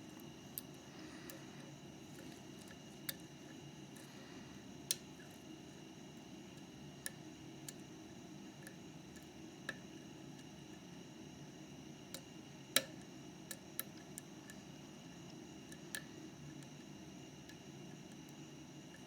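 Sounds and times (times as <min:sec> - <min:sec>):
low steady hum: 0:00.0 - 0:10.9.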